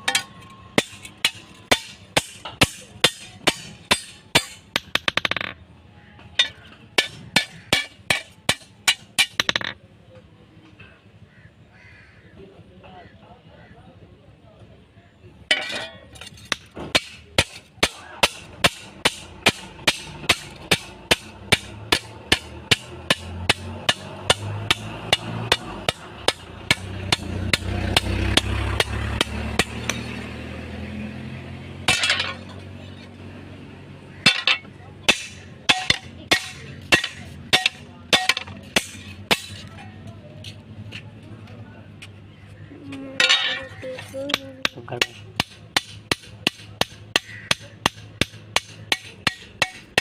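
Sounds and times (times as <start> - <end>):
hammer striking metal on anvil: 0.0 - 5.5, 6.4 - 9.7, 15.5 - 30.2, 31.9 - 32.6, 34.2 - 39.8, 44.3 - 50.0.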